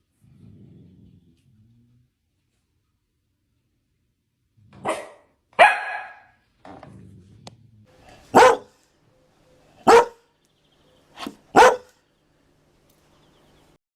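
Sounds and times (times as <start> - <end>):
dog barking: 4.8 - 6.4, 8.1 - 8.8, 9.8 - 10.3, 11.2 - 12.0.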